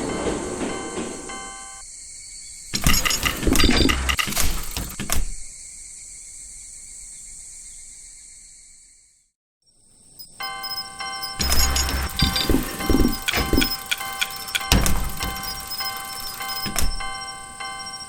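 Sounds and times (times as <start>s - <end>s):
railroad crossing alarm chiming: 0.0s - 1.8s, 10.4s - 18.0s
train clattering past: 0.0s - 1.8s, 11.4s - 18.0s.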